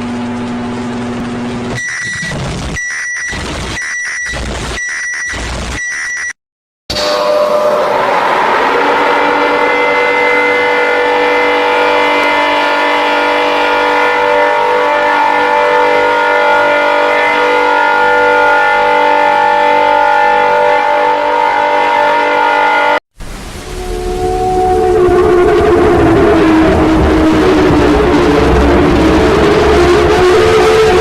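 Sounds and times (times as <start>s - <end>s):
emergency warning alarm chord: 6.9s - 23.0s.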